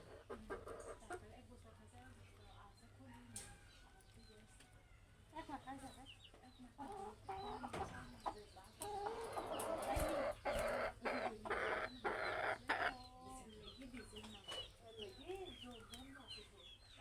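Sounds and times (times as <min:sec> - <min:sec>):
birds calling: 0:06.2 - 0:17.0.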